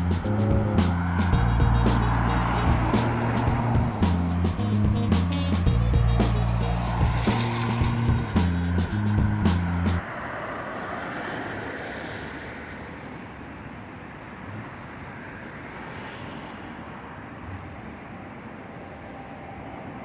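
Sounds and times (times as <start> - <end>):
music: 0.0 - 10.0
road traffic hum: 0.0 - 19.2.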